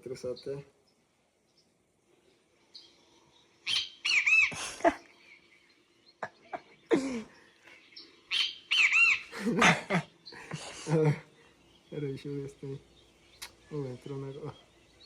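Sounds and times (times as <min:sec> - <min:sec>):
bird calling three-part phrase: 0:08.3 - 0:09.4.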